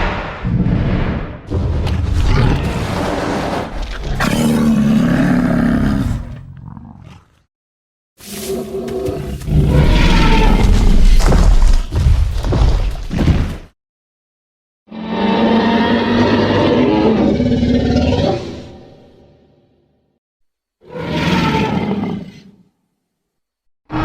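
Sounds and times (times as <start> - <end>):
deep dinosaur roars: 0.4 - 7.5, 8.4 - 11.7, 14.9 - 18.9.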